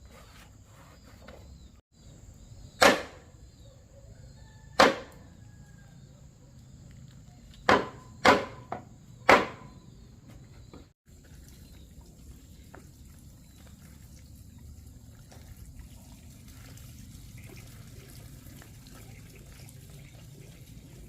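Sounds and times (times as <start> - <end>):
sharp knocks: 4.8 - 5.2, 7.6 - 9.8.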